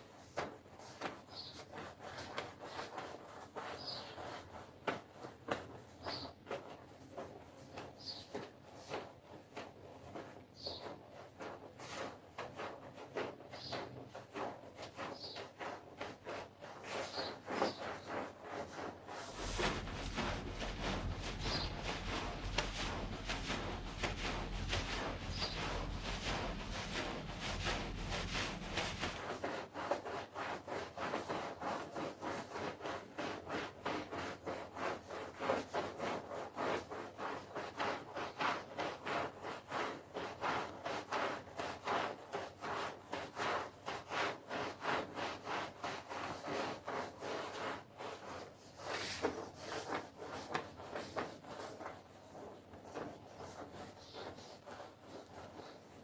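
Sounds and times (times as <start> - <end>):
brush scrubbing wet carpet: 0.0 - 56.0
low hum: 19.1 - 29.4.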